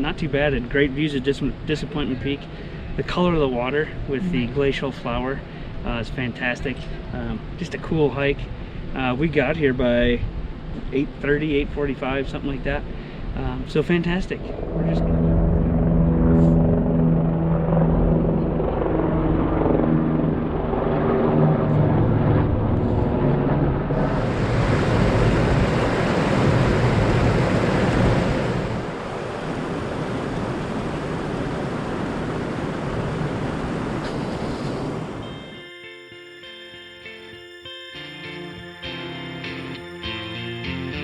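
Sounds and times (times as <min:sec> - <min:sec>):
guitar music: 0:35.2 - 0:41.0.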